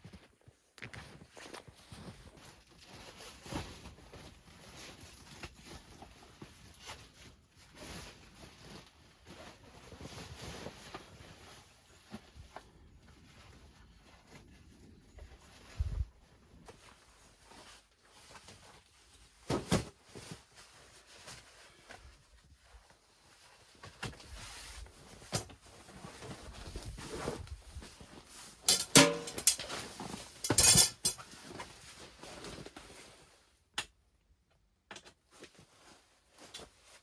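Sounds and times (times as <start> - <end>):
rustling: 0.9 - 33.6, 35.3 - 37.0
metal cookware clinking: 28.7 - 29.7, 30.5 - 31.2.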